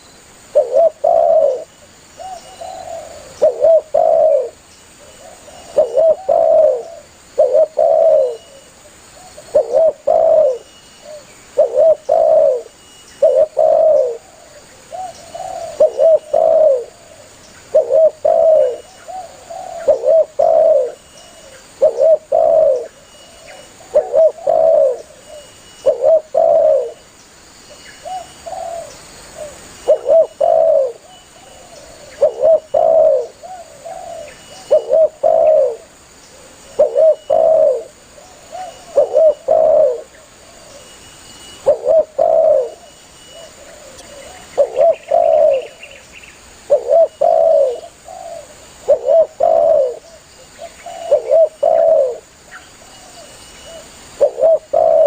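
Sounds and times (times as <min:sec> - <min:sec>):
dove cooing: 0:00.0 - 0:27.0, 0:28.0 - 0:46.0, 0:46.6 - 0:55.0.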